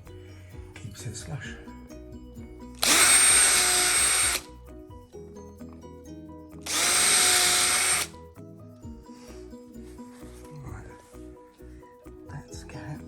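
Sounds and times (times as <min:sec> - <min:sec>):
background music: 0:00.0 - 0:13.0
power tool cutting wood: 0:02.8 - 0:04.5, 0:06.6 - 0:08.1.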